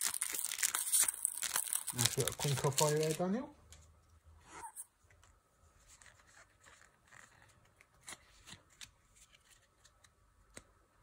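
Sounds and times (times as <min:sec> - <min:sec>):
trading cards rustling: 0:00.0 - 0:03.4.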